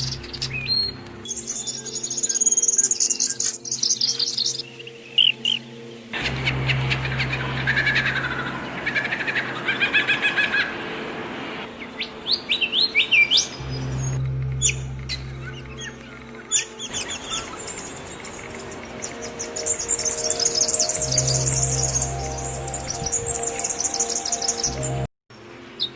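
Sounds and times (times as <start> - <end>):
songbirds singing: 0.0 - 10.8, 11.7 - 25.1
low steady hum: 5.7 - 9.7, 13.4 - 25.1.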